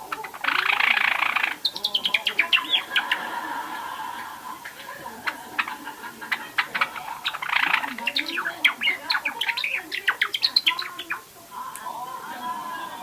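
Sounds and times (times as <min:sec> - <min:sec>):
sparrow chirping and clicking: 0:00.0 - 0:03.3, 0:04.6 - 0:11.3.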